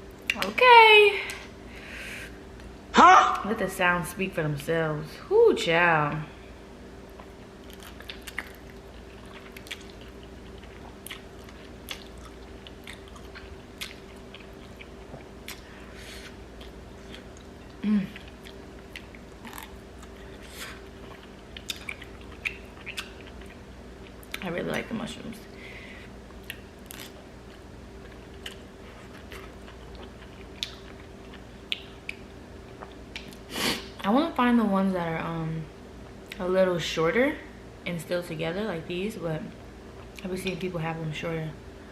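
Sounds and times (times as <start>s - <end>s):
steady low hum: 0.0s - 41.9s
person chewing food: 7.1s - 24.4s, 26.3s - 33.5s
wet mouth clicks: 21.6s - 23.4s.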